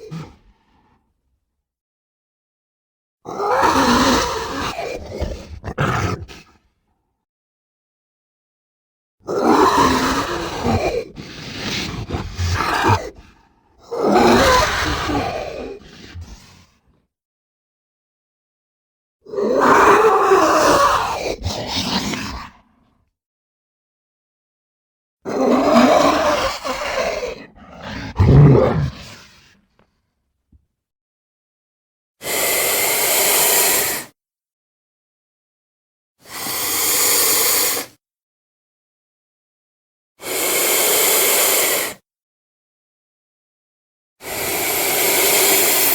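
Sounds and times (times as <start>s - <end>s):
creature growls: 3.7s - 6.5s, 25.4s - 29.4s
raspy hissing creature calls: 25.6s - 29.2s, 32.2s - 34.1s, 36.3s - 37.9s, 40.2s - 42.0s, 44.2s - 45.9s.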